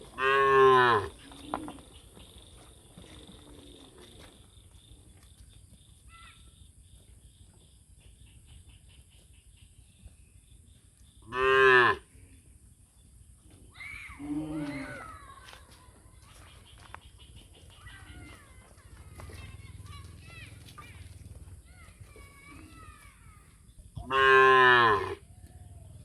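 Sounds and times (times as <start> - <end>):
cows mooing: 0.2 - 1.2, 11.3 - 12.0, 24.1 - 26.0.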